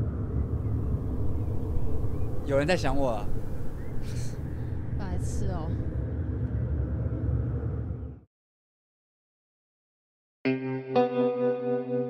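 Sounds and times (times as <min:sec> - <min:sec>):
low vehicle rumble: 0:00.0 - 0:08.3.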